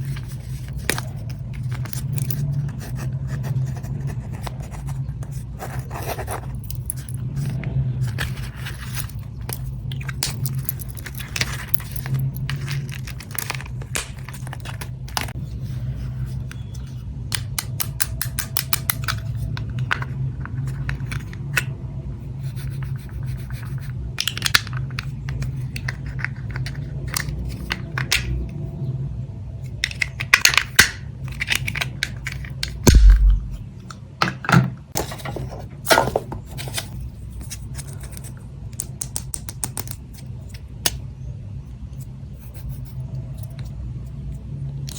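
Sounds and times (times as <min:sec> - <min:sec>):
small items scraping and clicking: 0:00.0 - 0:21.8, 0:22.5 - 0:28.4, 0:29.7 - 0:33.7
heavy low thump: 0:32.9 - 0:33.7.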